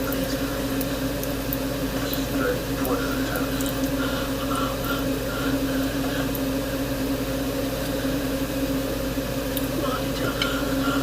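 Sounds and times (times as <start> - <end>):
machine hum: 0.0 - 11.0
faint television voices: 1.9 - 6.7, 9.6 - 11.0.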